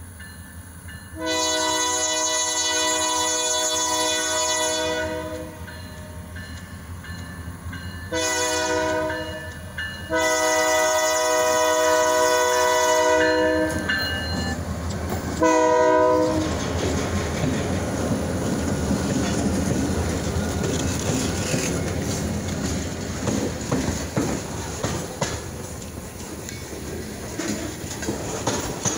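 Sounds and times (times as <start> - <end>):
train rumbling past: 0.0 - 28.9
locomotive air horn blasts: 1.2 - 5.7, 8.1 - 9.5, 10.1 - 14.0, 15.4 - 16.5.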